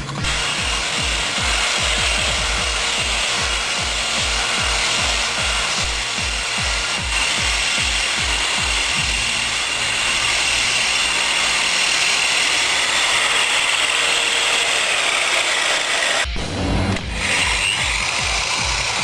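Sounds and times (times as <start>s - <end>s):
music with thumping beat: 0.0s - 9.6s, 16.2s - 19.0s
angle grinder whining: 0.0s - 19.0s.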